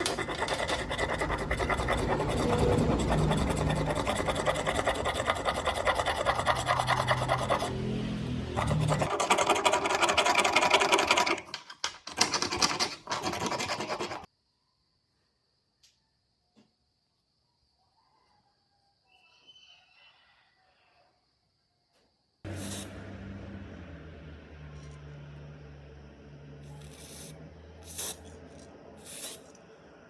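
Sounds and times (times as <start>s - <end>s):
hand tool rasping and scraping: 0.0s - 7.8s, 8.6s - 14.3s.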